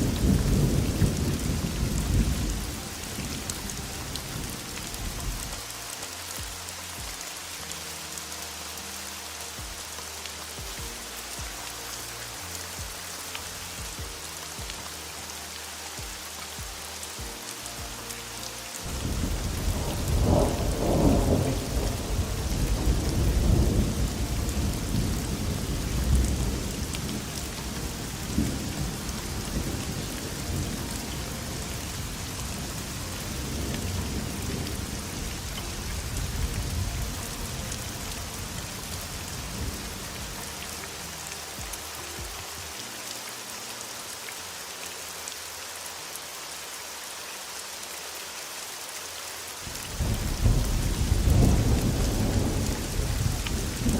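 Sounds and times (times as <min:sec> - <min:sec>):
thunder rumbling: 0:00.0 - 0:05.6, 0:18.8 - 0:40.5, 0:49.7 - 0:53.9
heavy rain: 0:00.0 - 0:53.9.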